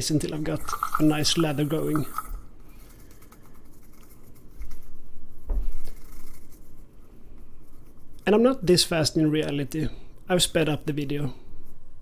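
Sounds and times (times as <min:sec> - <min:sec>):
shaving brush rubbing on skin: 0:05.7 - 0:08.9.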